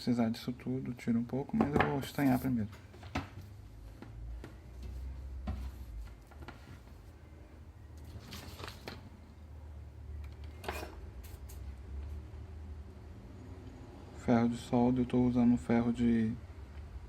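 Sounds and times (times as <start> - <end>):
soft handling noises: 1.5 - 7.3.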